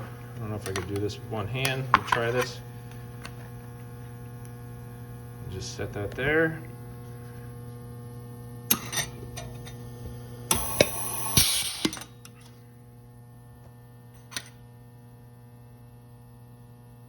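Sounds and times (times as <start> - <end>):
electrical hum: 0.0 - 17.0
air hiss: 10.5 - 12.0.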